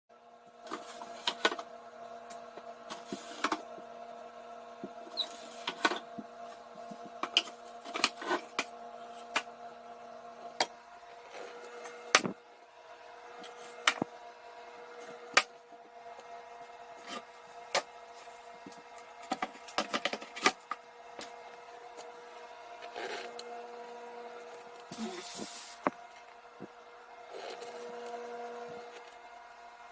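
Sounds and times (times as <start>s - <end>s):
steady hum: 0.2s - 29.9s.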